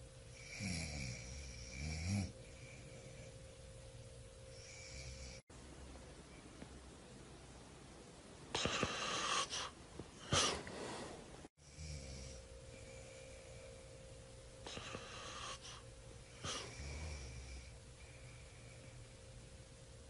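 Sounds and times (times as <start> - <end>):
man snoring: 0.3 - 3.2, 4.5 - 5.4, 11.6 - 12.5, 16.4 - 17.8.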